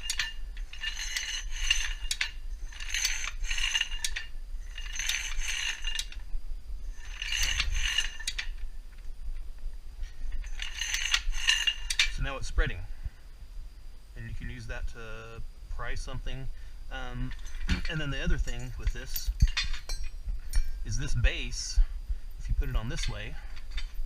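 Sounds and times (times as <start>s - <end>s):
jack ratcheting metallic clicks: 0.0s - 6.2s, 6.9s - 9.1s, 10.2s - 12.3s, 17.0s - 21.0s, 22.4s - 24.0s.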